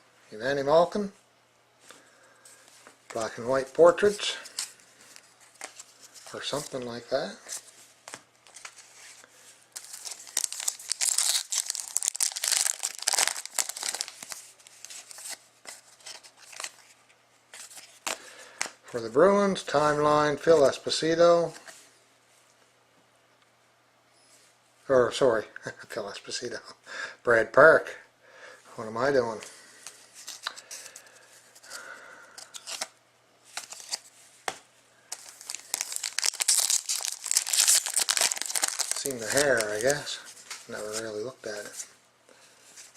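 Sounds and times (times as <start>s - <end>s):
wrapper crinkling and tearing: 9.8s - 15.4s, 35.1s - 41.2s.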